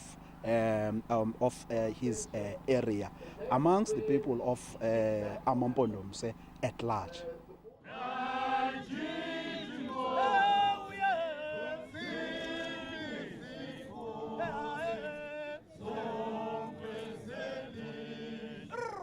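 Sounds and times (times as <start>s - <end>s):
choir singing: 7.8s - 18.7s.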